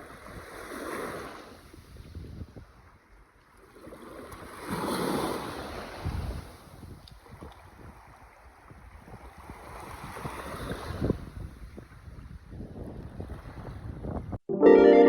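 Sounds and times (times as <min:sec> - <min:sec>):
wind buffeting microphone: 0:01.6 - 0:03.0, 0:05.7 - 0:14.4.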